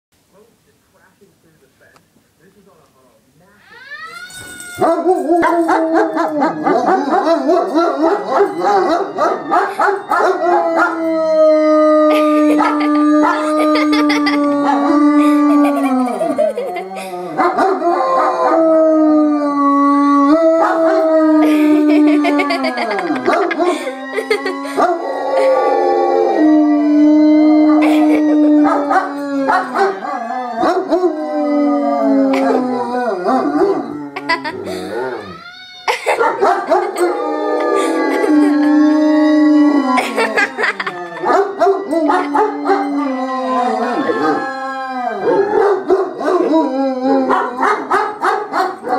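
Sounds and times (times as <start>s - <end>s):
dogs yipping: 3.7s - 11.0s, 27.8s - 30.9s, 33.3s - 37.2s, 40.0s - 43.0s, 47.3s - 48.9s
fire siren wailing: 3.7s - 35.9s, 36.6s - 47.7s
dogs howling: 3.7s - 48.9s.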